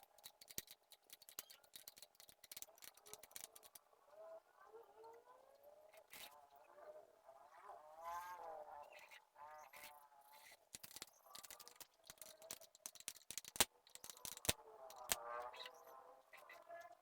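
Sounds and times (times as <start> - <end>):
sharp clicks and taps: 0.0 - 3.8, 10.7 - 15.2.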